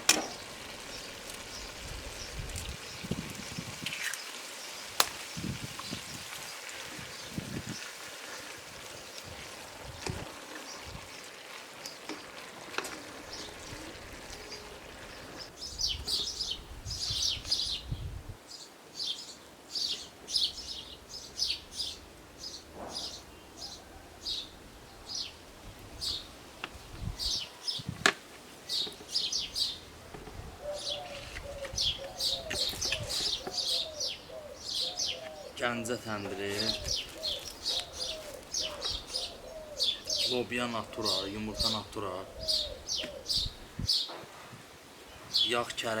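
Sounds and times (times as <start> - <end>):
small birds chirping: 0.2 - 44.2, 44.9 - 46.0.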